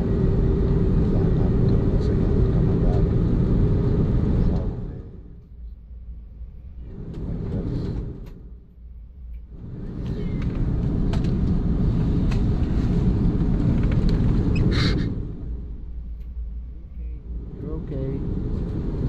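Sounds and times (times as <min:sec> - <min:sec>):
aircraft engines rumbling: 0:00.0 - 0:19.0
airframe rolling: 0:09.5 - 0:15.7.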